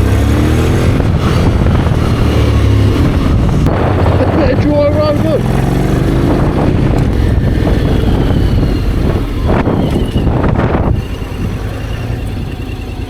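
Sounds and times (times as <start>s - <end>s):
wind noise on microphone: 0.0s - 12.6s
motorcycle engine running: 0.0s - 13.0s.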